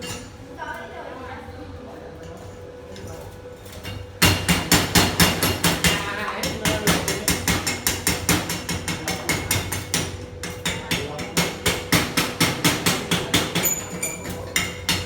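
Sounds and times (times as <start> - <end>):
hammer striking metal: 4.2 - 15.0.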